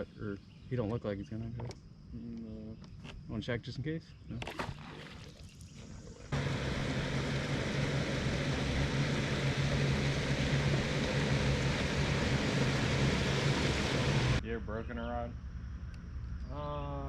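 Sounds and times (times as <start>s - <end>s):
outboard motor running: 6.3s - 14.4s
wind and water rushing: 6.3s - 14.4s.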